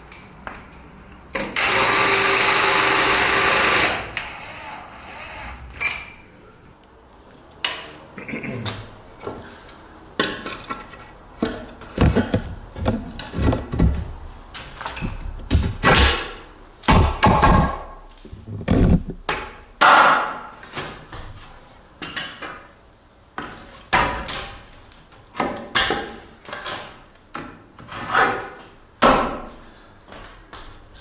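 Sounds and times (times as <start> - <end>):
hammer striking: 15.0 - 18.0.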